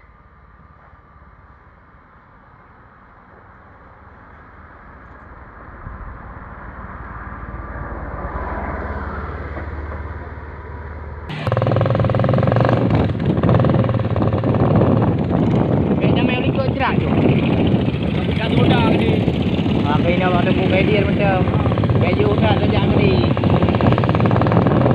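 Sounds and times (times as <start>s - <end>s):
vehicle engine running: 11.3s - 24.9s.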